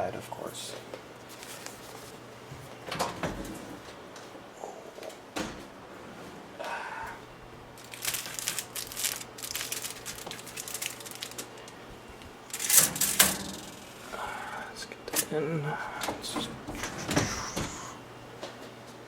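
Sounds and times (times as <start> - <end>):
low steady hum: 0.0 - 19.0
aluminium foil crinkling: 7.8 - 11.8, 12.5 - 13.4.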